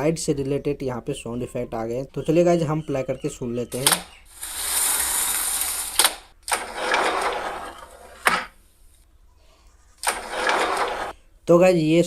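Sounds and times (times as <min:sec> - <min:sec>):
sharp click: 0:03.7 - 0:04.1, 0:06.0 - 0:06.7.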